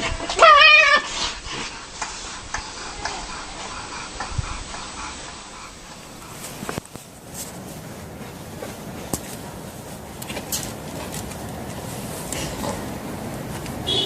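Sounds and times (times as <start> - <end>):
cat yowling: 0.3 - 1.1.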